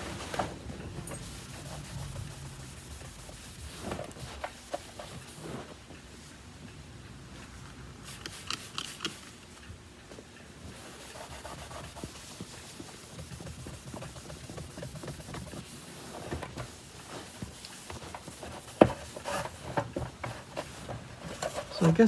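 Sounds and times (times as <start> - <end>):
scrubbing on vacuum cleaner body: 1.0 - 5.7, 10.7 - 22.0.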